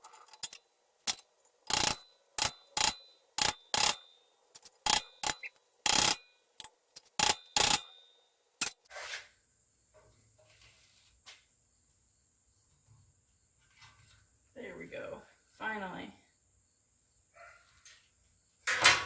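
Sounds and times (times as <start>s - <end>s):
hammer striking chisel on metal: 0.3s - 6.3s, 7.0s - 8.0s.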